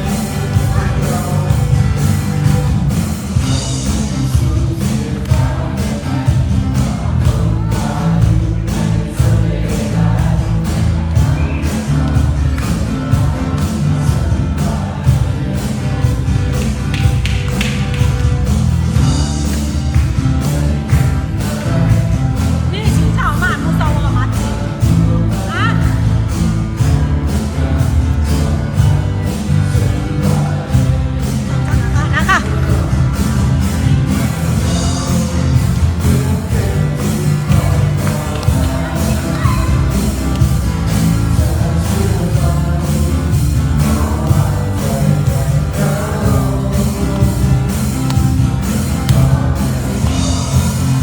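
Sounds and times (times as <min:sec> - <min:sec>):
person singing: 0:00.0 - 0:26.1, 0:26.8 - 0:51.0
heavy bass: 0:00.0 - 0:51.0
steady drum beat: 0:00.0 - 0:51.0
worship band music: 0:00.0 - 0:51.0.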